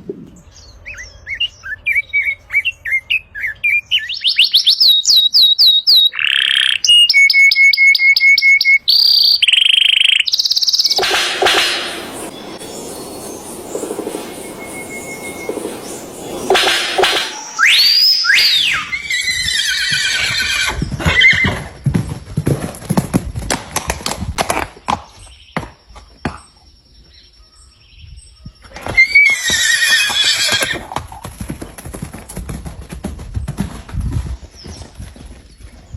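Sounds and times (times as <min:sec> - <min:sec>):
hoofbeats clip-clopping: 0:11.0 - 0:17.3, 0:19.2 - 0:26.5, 0:28.7 - 0:35.9
horse whinnying: 0:17.7 - 0:21.7, 0:28.8 - 0:31.0.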